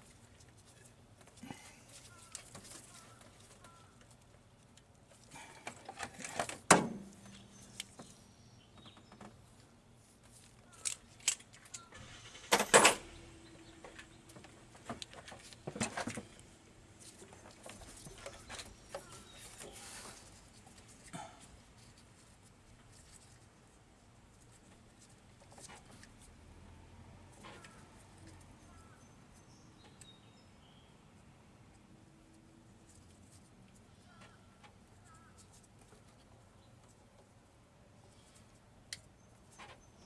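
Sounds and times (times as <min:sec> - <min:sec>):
sharp metallic clanks: 0:12.4 - 0:13.4
metal tools clinking: 0:12.4 - 0:13.5.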